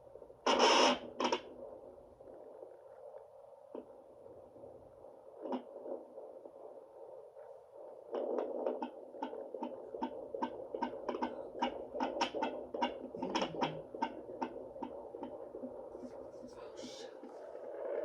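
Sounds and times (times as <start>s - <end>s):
fast fetal heartbeat pulsing: 0.0s - 18.0s
doppler speaker hiss: 10.7s - 18.0s.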